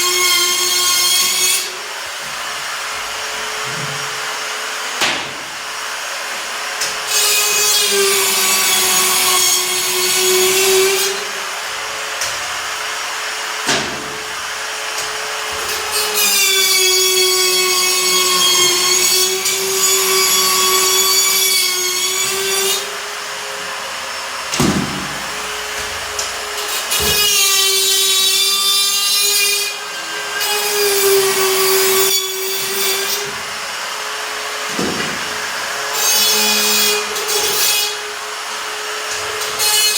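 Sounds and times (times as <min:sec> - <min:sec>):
power tool cutting drywall: 0:00.0 - 0:39.9
knocks: 0:24.5 - 0:26.1.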